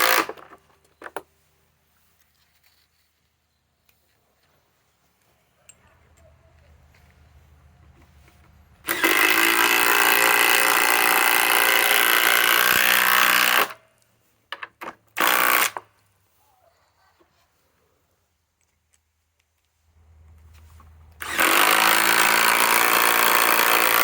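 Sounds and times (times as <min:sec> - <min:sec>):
cordless drill boring into wood: 0:00.0 - 0:00.4, 0:08.8 - 0:13.8, 0:15.2 - 0:15.8, 0:21.2 - 0:24.0.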